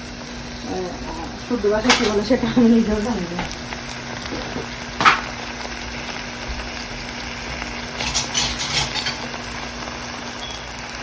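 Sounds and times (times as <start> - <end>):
food sizzling in hot oil: 0.0 - 11.0
spoon scraping pot: 7.9 - 9.3.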